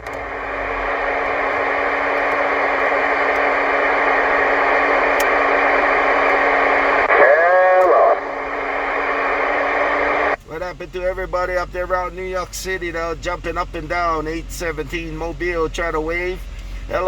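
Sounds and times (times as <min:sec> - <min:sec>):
rising and falling radio tone: 0:00.0 - 0:10.4
radio static hiss: 0:00.0 - 0:10.5
low steady hum: 0:00.0 - 0:17.0.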